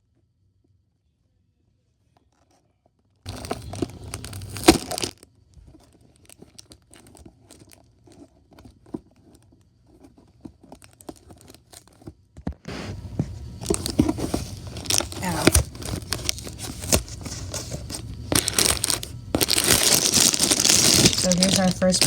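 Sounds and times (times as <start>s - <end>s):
light clicks and crinkles: 2.2s - 12.2s, 13.6s - 22.0s
cardboard box ripping: 3.3s - 5.2s, 13.6s - 22.0s
plastic bags rustling: 3.3s - 8.9s, 13.6s - 22.0s.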